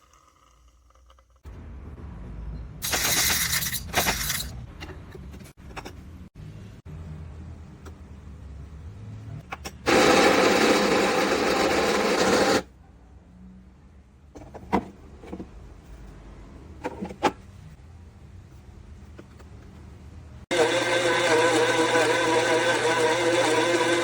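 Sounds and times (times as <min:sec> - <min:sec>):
coffee grinder motor running: 0:09.9 - 0:12.7, 0:20.5 - 0:24.0.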